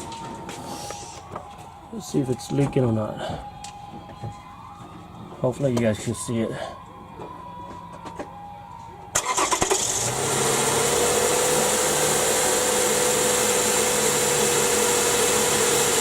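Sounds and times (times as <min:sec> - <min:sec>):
car engine idling: 0:09.2 - 0:16.0.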